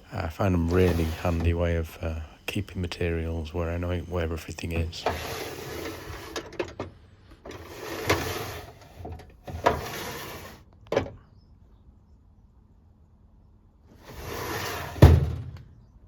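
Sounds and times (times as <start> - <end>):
tool drawers sliding: 0.6 - 1.6, 4.6 - 6.8, 7.4 - 10.6, 14.0 - 15.4.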